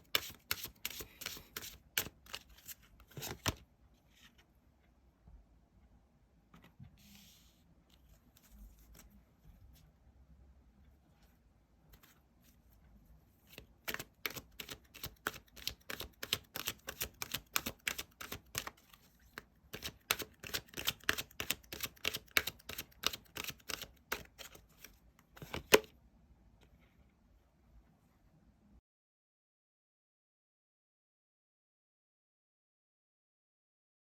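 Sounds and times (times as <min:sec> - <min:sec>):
cards being shuffled: 0:00.0 - 0:03.6, 0:13.5 - 0:25.9.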